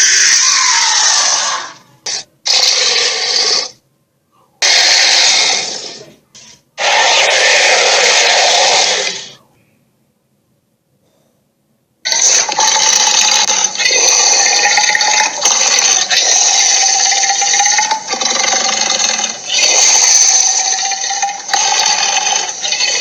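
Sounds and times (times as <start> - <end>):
cartoon dinosaur roars: 0.0 - 3.8, 4.6 - 6.1, 6.8 - 9.4, 12.1 - 23.0.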